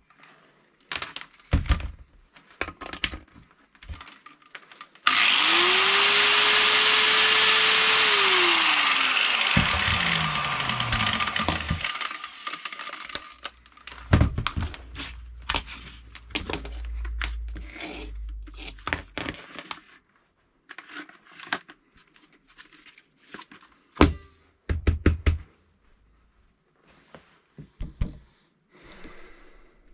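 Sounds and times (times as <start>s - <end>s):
high-speed electric motor: 5.1s - 13.6s.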